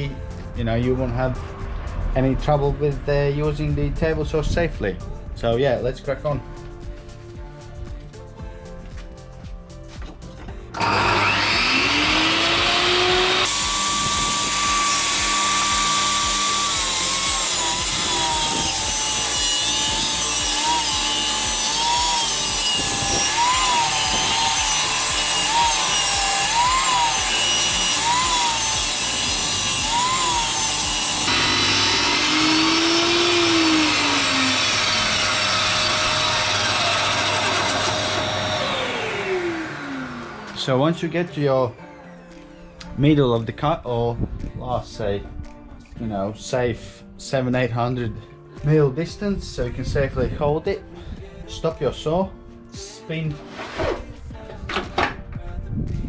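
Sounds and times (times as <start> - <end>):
table saw cutting wood: 10.7 - 41.8.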